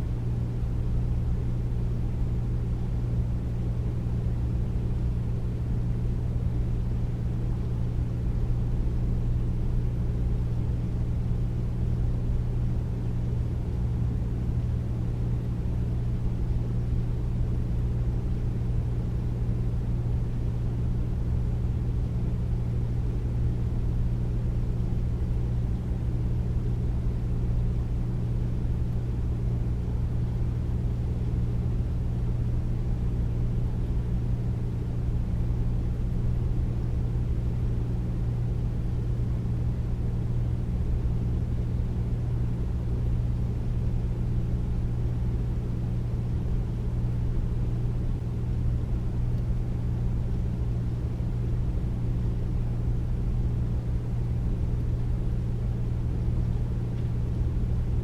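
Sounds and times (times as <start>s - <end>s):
air conditioner humming: 0.0s - 58.0s.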